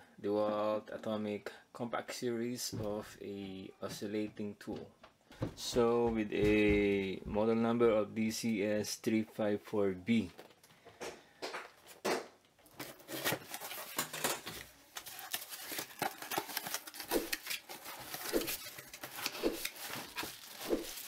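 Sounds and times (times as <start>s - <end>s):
cardboard box being opened: 12.8s - 21.0s.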